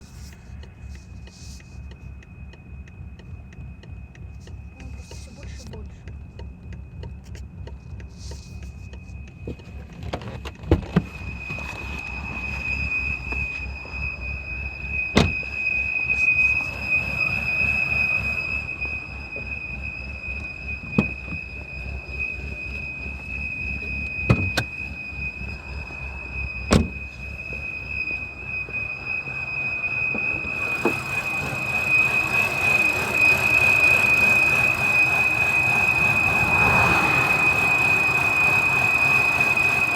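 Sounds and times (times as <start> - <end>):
engine rumble: 0.0 - 39.9
engine whistle: 0.0 - 39.9
rushing noise: 11.0 - 39.9.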